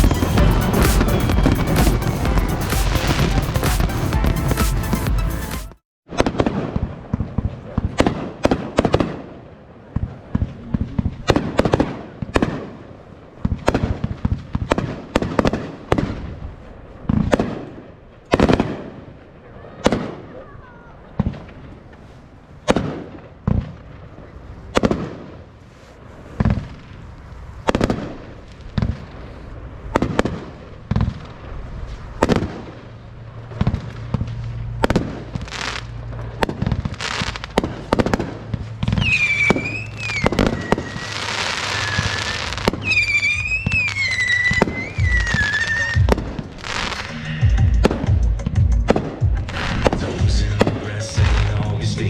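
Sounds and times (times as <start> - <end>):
high wavering whistles: 0.0 - 3.0, 39.0 - 46.1
fireworks crackle: 0.0 - 5.5, 20.8 - 48.1, 48.9 - 52.0
fireworks bangs: 0.0 - 52.0.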